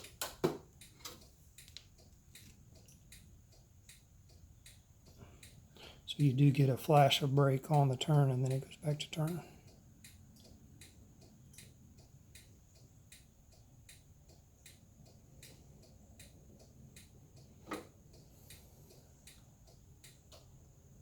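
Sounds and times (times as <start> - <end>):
turn signal flasher ticking: 0.0 - 21.0.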